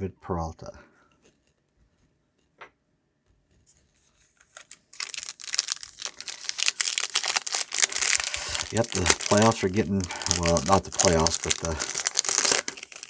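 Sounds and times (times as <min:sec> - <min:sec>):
foil wrapper tearing and crinkling: 0:04.4 - 0:13.0.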